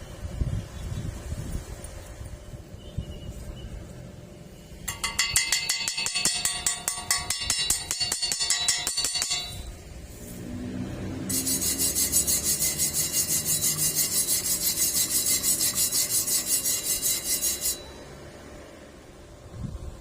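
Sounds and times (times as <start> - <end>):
rhythmic rasping strokes: 4.8 - 9.8, 11.2 - 18.2.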